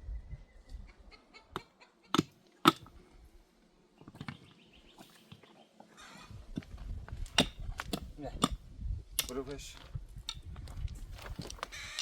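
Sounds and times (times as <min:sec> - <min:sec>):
faint bird chirps: 0:00.0 - 0:01.9.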